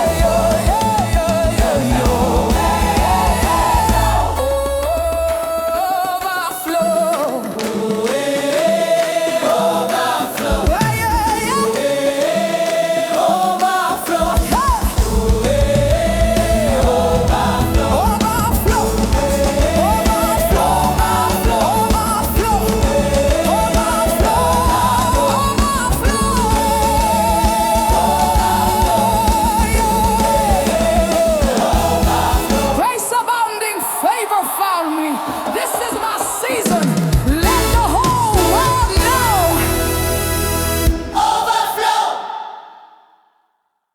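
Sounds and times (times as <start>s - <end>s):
low drum and bass beat: 0.0s - 4.4s, 15.0s - 32.8s
gospel singing with held notes: 0.0s - 43.3s.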